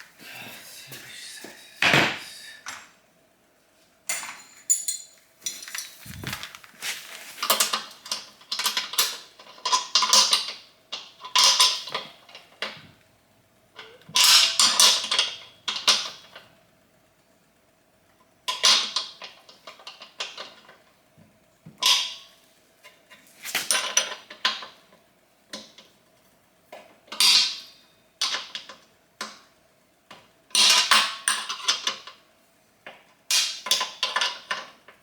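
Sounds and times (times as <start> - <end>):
metal tools clinking and scraping: 4.1 - 9.8.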